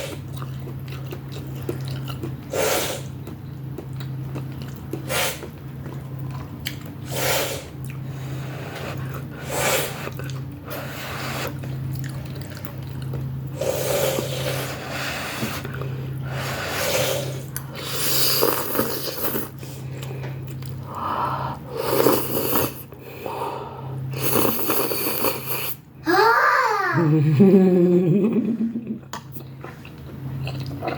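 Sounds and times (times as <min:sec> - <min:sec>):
steady low hum: 0:00.0 - 0:30.9
chewing: 0:00.2 - 0:02.5, 0:03.1 - 0:07.0, 0:10.0 - 0:10.6, 0:11.4 - 0:13.4, 0:18.3 - 0:20.9, 0:29.1 - 0:30.9
noodles slurped: 0:08.7 - 0:20.9, 0:21.7 - 0:23.0, 0:24.1 - 0:25.9.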